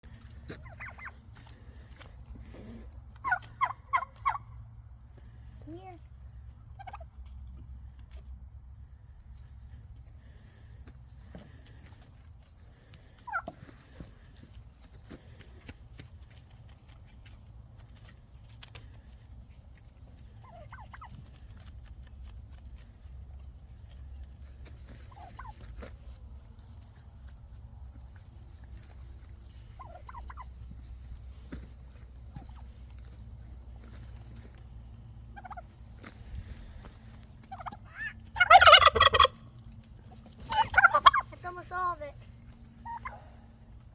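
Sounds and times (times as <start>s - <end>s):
turkeys calling: 0.1s - 4.7s, 6.6s - 8.2s, 9.2s - 43.9s
turkey gobble: 0.2s - 4.6s, 6.6s - 7.6s, 13.2s - 14.5s, 20.0s - 21.3s, 25.0s - 25.6s, 29.7s - 30.7s, 35.3s - 35.8s, 37.4s - 41.4s, 42.8s - 43.4s.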